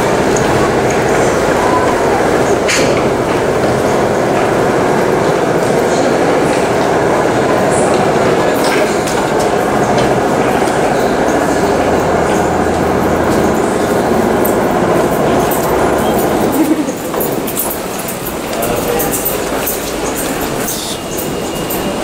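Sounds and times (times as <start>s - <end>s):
subway train rumbling and rattling: 0.0s - 22.0s.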